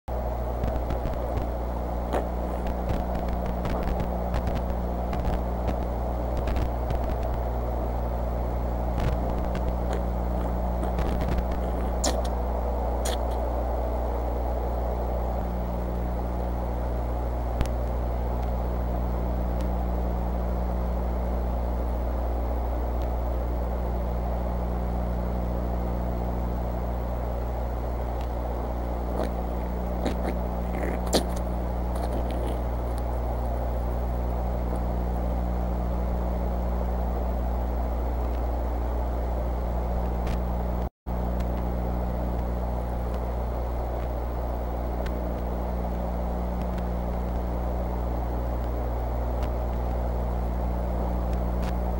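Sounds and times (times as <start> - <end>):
electrical hum and hiss: 0.1 - 51.9
rustles: 0.5 - 7.5, 8.8 - 13.8, 28.0 - 35.6.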